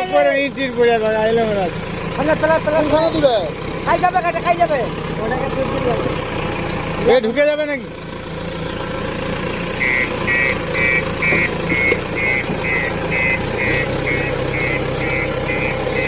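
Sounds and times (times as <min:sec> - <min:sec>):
diesel engine running: 0:00.0 - 0:16.0
reversing alarm beeping: 0:09.8 - 0:16.0.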